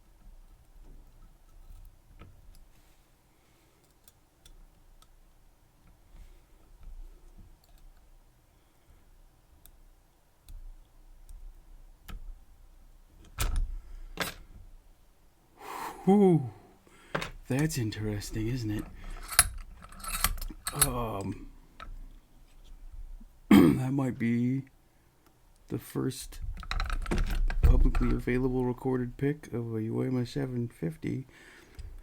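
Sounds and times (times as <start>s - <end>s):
lock picks clicking in padlock: 19.1s - 20.9s.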